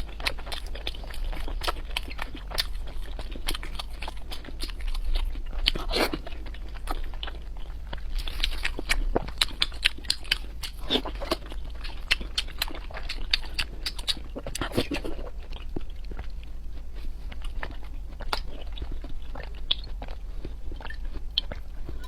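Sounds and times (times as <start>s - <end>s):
person chewing crunchy food: 0.0s - 22.0s.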